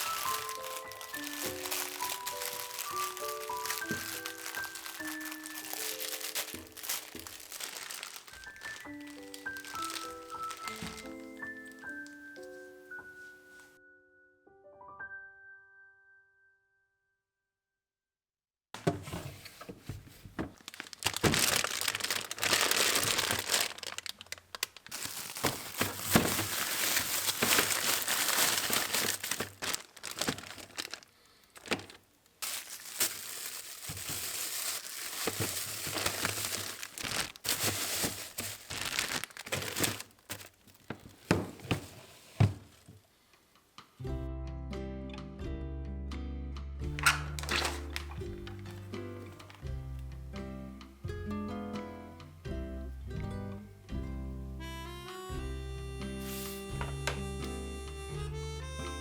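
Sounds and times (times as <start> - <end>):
items being set down: 0.0 - 12.3, 18.8 - 43.0, 47.0 - 49.7, 56.2 - 57.3
plastic bags crinkling: 0.0 - 12.5, 20.1 - 43.1, 47.0 - 49.7.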